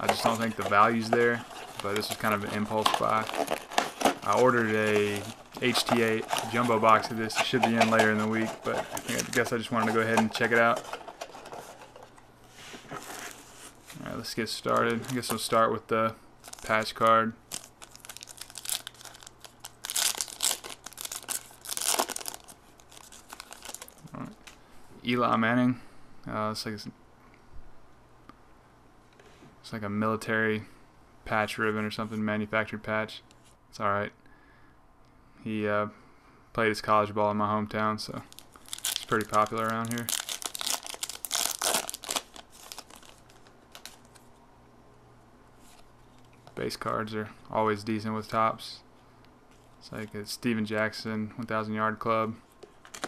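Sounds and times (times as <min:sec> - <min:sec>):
plastic packaging crinkling: 0:00.0 - 0:15.7, 0:16.4 - 0:24.6, 0:38.2 - 0:44.3, 0:52.6 - 0:53.0
small crackles: 0:16.4 - 0:24.6, 0:38.2 - 0:44.4.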